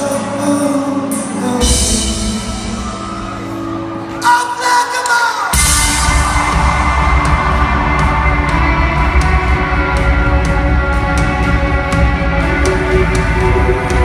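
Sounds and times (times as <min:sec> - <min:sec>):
rock band playing loud: 0:00.0 - 0:04.6, 0:05.4 - 0:14.0.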